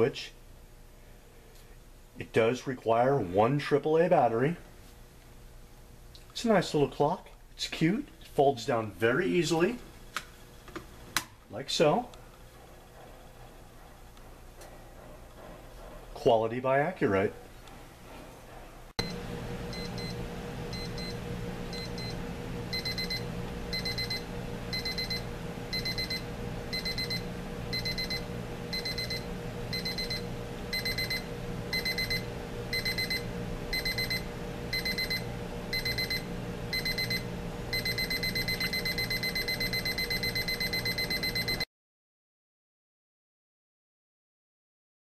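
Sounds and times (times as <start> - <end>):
alarm clock beeping: 19.7 - 41.6.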